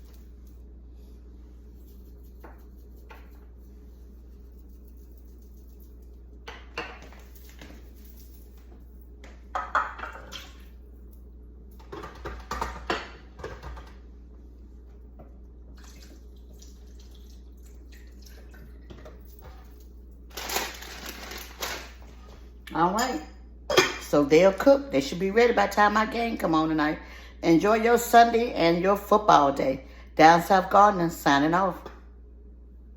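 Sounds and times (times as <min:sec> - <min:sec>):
handling sounds: 0:19.2 - 0:22.2.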